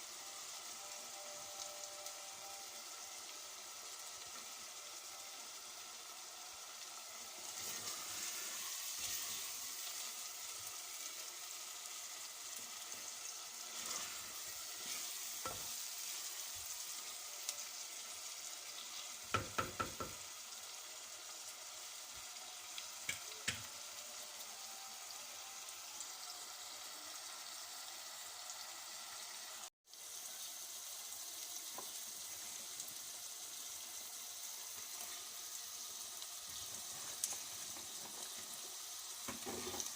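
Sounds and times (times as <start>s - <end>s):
food sizzling in a pan: 0.0s - 39.9s
stirring in a pan: 6.6s - 20.3s, 34.4s - 39.9s.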